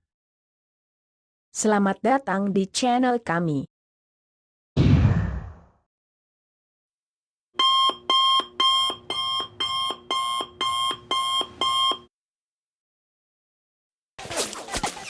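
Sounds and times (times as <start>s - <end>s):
alarm clock beeping: 7.6s - 12.1s.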